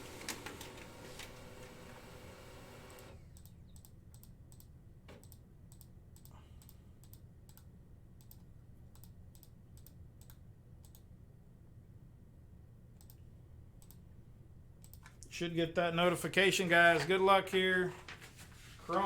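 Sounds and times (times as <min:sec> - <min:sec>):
keyboard and mouse clicks: 0:02.9 - 0:11.1, 0:13.0 - 0:13.2, 0:13.8 - 0:14.0, 0:14.8 - 0:15.2.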